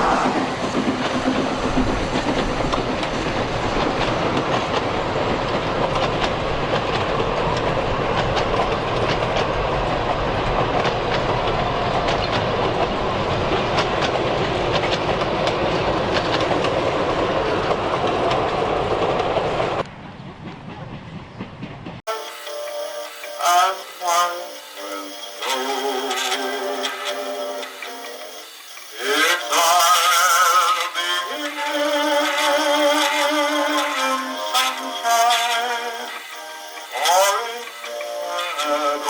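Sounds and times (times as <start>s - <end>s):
train rumbling on track: 0.0s - 22.1s
music: 22.1s - 39.0s.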